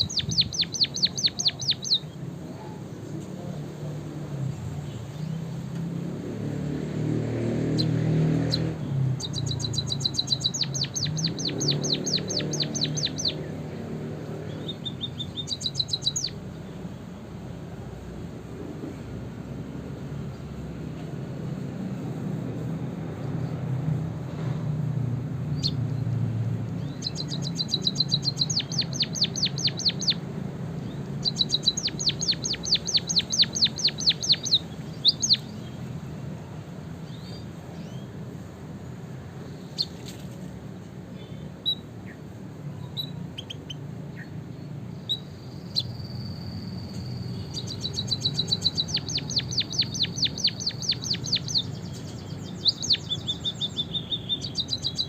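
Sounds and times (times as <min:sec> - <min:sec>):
thin held bird whistle: 0:00.0 - 0:02.1, 0:09.2 - 0:13.5, 0:14.5 - 0:16.4, 0:26.8 - 0:30.2, 0:30.8 - 0:35.6, 0:45.0 - 0:55.0
songbirds trilling chirps: 0:00.0 - 0:55.0.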